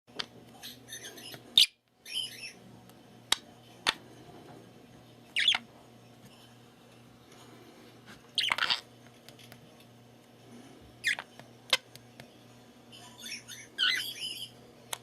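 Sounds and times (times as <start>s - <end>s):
budgerigar chirping and warbling: 0.6s - 2.6s, 5.3s - 5.6s, 8.4s - 8.8s, 13.2s - 14.5s.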